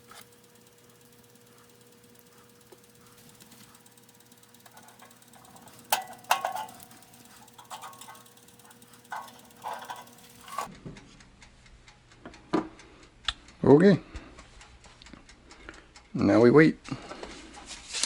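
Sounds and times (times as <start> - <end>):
steady hum: 0.0 - 10.7.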